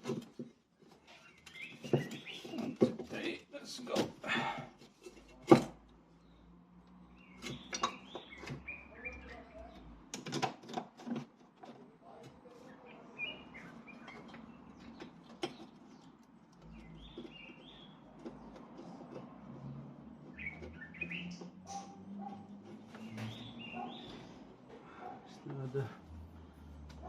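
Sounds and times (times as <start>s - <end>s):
small birds chirping: 0.8s - 4.6s, 5.9s - 10.1s, 11.7s - 27.0s.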